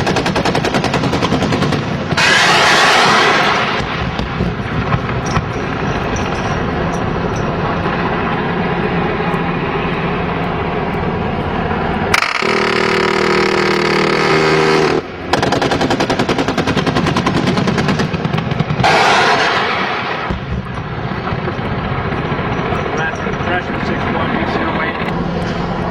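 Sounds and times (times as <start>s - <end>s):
automatic cannon fire: 0.0s - 6.6s, 12.1s - 22.5s
helicopter engine and rotor: 0.0s - 25.9s
loud rushing with steady hum: 0.0s - 25.9s.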